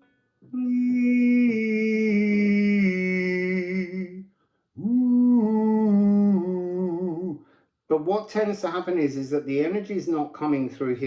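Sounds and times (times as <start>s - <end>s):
person singing long held notes: 0.5s - 7.5s.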